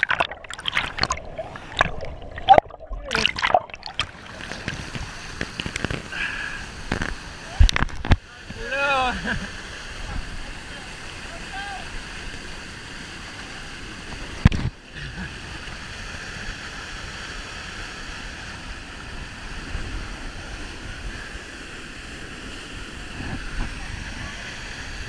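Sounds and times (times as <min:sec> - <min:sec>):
waterfall rushing: 0:00.0 - 0:14.4.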